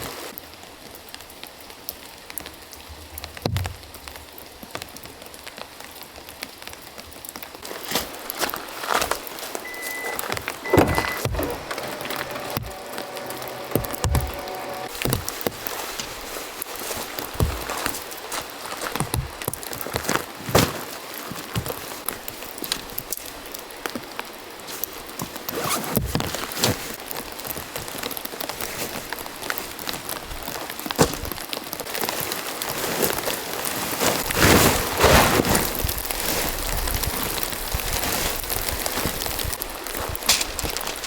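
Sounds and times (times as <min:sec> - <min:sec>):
rain falling: 0:00.0 - 0:41.0.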